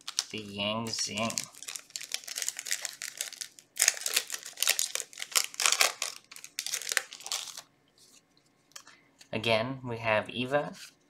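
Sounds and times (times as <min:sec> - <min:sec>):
foil wrapper crinkling: 0:00.0 - 0:07.7.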